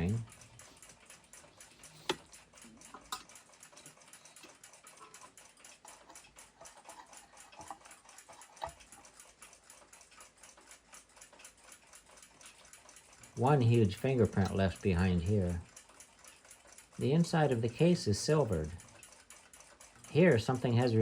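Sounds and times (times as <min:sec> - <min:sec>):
mechanical clock ticking: 0:00.0 - 0:21.0
metal parts clicking: 0:01.6 - 0:09.0.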